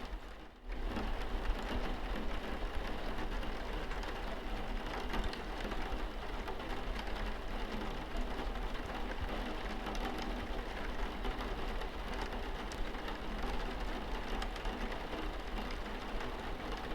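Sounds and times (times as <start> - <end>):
rain pattering on a window: 0.0 - 16.9.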